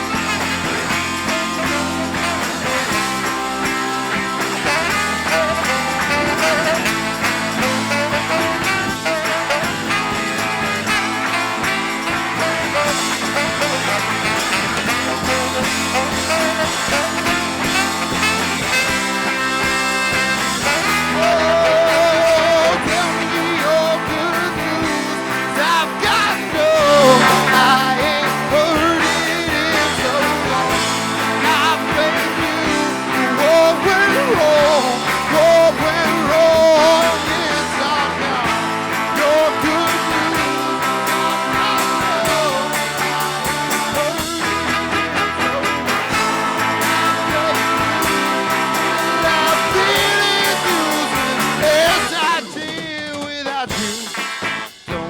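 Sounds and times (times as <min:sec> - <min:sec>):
lead guitar line bending in pitch: 0:00.0 - 0:38.8
live rock band playing: 0:00.0 - 0:55.0.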